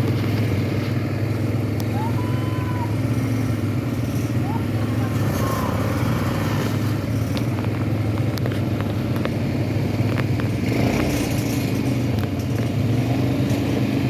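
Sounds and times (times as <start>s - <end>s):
atv engine running: 0.0s - 14.0s.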